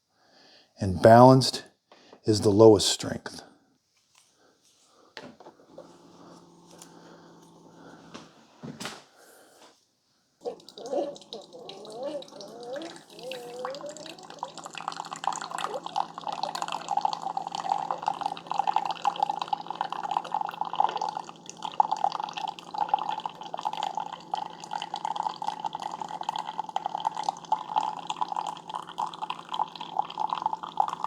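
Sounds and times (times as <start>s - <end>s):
coffee machine hum: 5.2s - 8.4s, 10.4s - 31.0s
coffee splashing into a cup: 10.5s - 31.0s.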